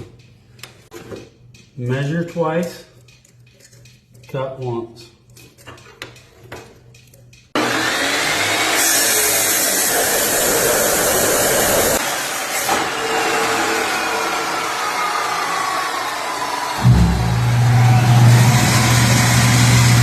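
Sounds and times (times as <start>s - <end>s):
electric power saw cutting steel: 7.6s - 20.0s.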